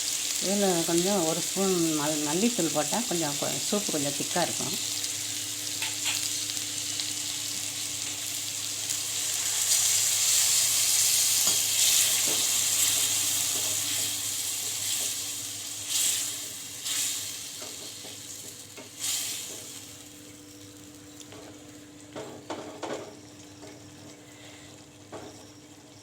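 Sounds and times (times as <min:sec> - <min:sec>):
food sizzling in hot oil: 0:00.0 - 0:26.0.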